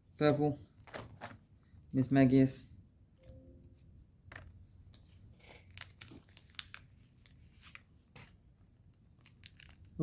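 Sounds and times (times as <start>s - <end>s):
trading cards and sleeves crackling: 4.3s - 10.0s.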